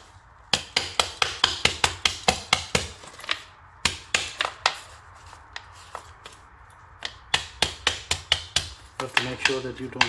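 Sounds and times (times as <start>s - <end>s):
hand tool knocking on plastic: 7.0s - 10.0s.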